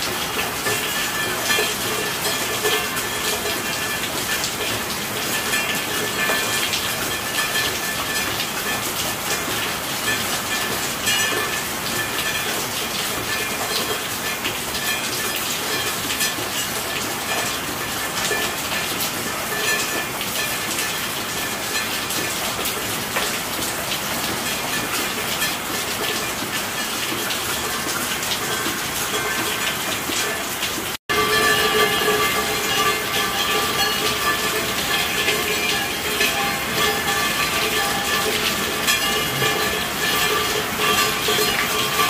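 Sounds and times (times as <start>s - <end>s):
heavy rain: 0.0s - 42.0s.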